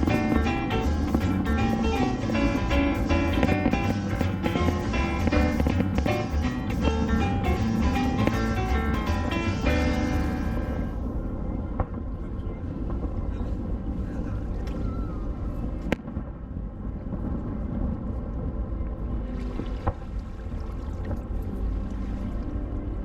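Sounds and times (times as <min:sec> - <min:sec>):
wind: 0:00.0 - 0:23.0
water at the shoreline: 0:11.0 - 0:23.0.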